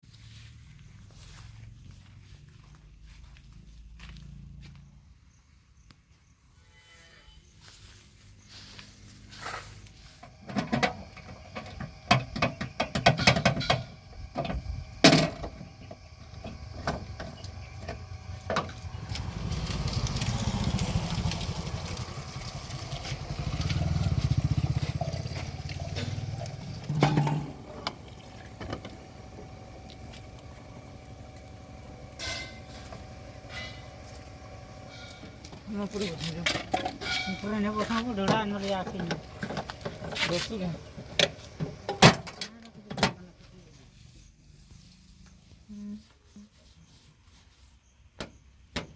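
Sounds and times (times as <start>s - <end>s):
diesel engine labouring: 7.8s - 45.5s
sharp knocks and clanks: 10.2s - 19.4s, 23.6s - 29.0s, 32.1s - 34.0s, 34.9s - 40.4s, 41.0s - 43.2s.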